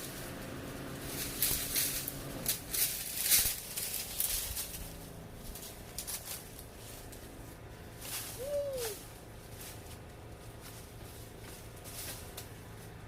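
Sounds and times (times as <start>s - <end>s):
leafy branches rustling: 0.0s - 13.0s
bird call rising and falling: 8.4s - 9.0s.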